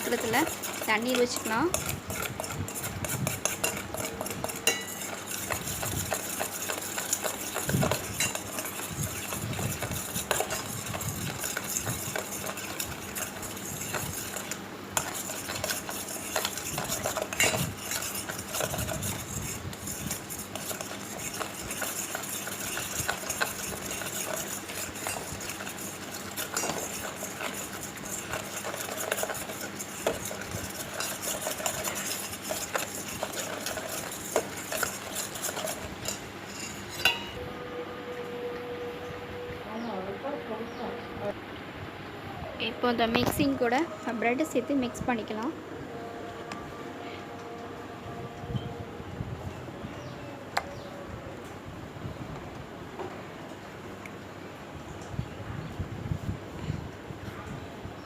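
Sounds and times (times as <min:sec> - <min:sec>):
metal spoon scraping a bowl: 0:00.0 - 0:37.4.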